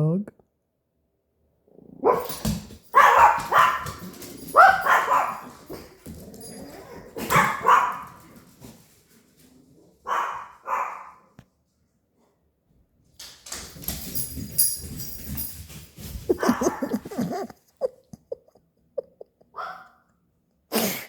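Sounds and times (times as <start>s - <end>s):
dog barking: 2.0s - 6.0s, 7.0s - 8.4s, 10.0s - 11.4s, 16.3s - 17.2s, 19.6s - 20.0s.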